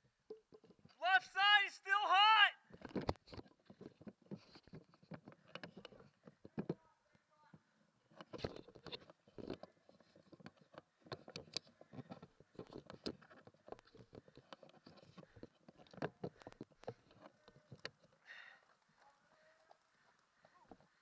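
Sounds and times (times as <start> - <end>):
airsoft gun clicks and knocks: 2.8 - 6.8, 8.1 - 18.2.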